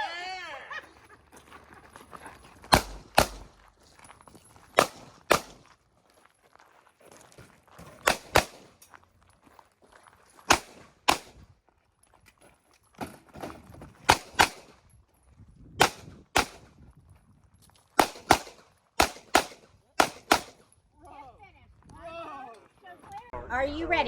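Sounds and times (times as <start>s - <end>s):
pistol shots in pairs: 2.7s - 3.6s, 4.8s - 5.7s, 8.0s - 8.8s, 10.5s - 11.5s, 14.1s - 14.8s, 15.8s - 16.7s, 18.0s - 20.6s.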